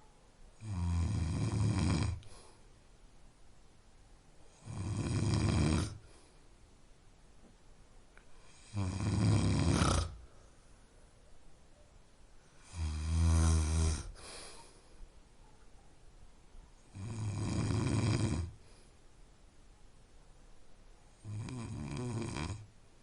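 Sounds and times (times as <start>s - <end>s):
person snoring: 0.6s - 2.4s, 4.5s - 6.1s, 8.4s - 10.2s, 12.6s - 14.4s, 16.9s - 18.6s, 21.2s - 22.7s.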